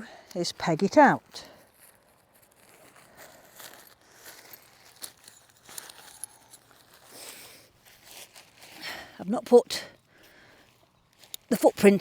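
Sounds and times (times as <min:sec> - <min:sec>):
tent fabric rustling: 0:01.6 - 0:09.0.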